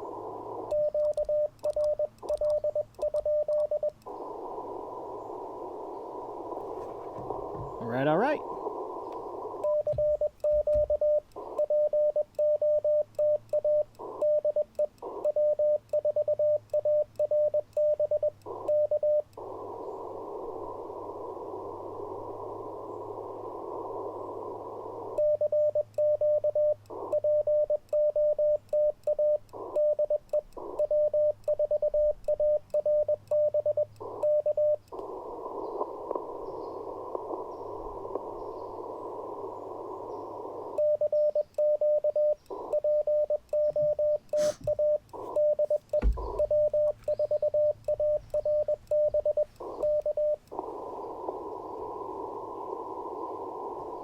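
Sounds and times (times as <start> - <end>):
radio receiver hiss: 0.0 - 54.0
morse code tone: 40.8 - 50.4.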